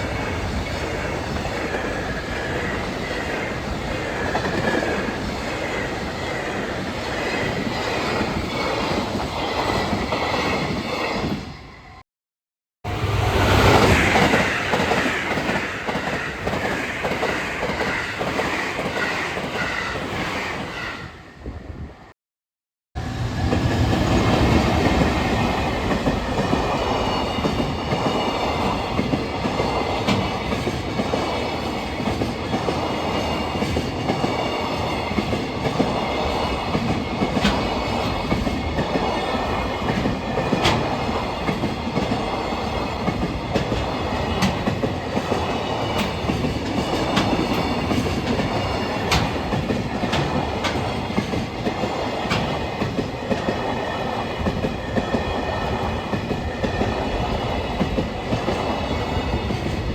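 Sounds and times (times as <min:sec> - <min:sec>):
train rumbling: 0:00.0 - 0:12.0, 0:12.9 - 0:22.1, 0:23.0 - 0:59.9
train wheels clattering over rail joints: 0:25.8 - 0:59.9.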